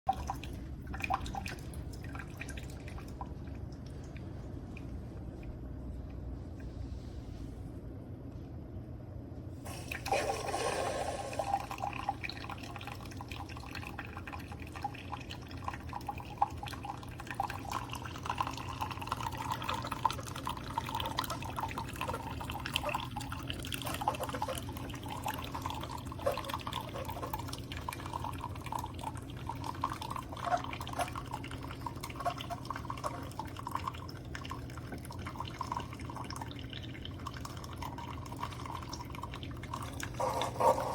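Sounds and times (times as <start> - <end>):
coffee maker humming: 9.6 - 40.9
coffee dripping into cup: 11.4 - 40.8.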